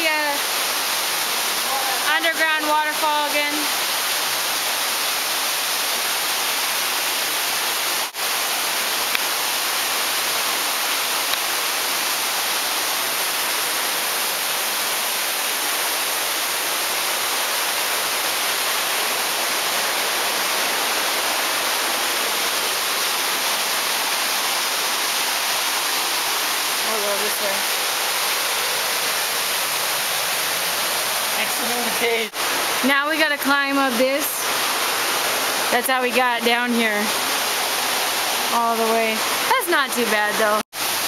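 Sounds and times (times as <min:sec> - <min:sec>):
waterfall rushing: 0:00.0 - 0:41.0.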